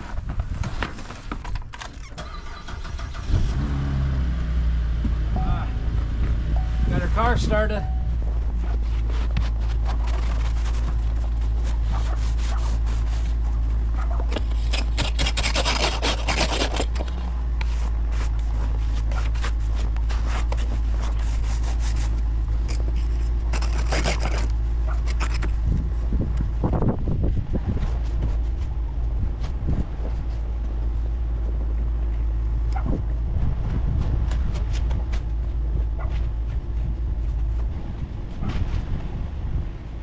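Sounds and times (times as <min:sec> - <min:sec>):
car engine idling: 0:02.4 - 0:14.7
scraping and rubbing: 0:06.2 - 0:39.2.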